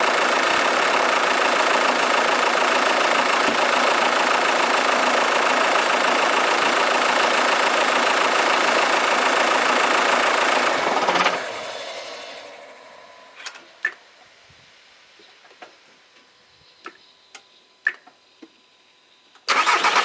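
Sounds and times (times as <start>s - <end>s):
diesel engine idling: 0.0s - 14.2s.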